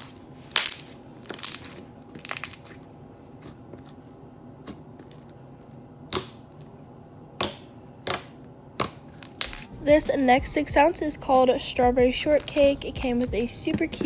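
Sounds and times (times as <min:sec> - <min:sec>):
slime squished and popping: 0:00.0 - 0:02.8.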